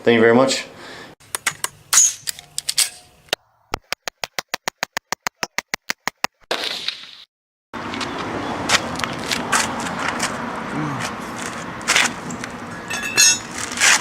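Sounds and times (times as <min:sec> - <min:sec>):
sharp clicks and knocks: 0:01.3 - 0:06.4.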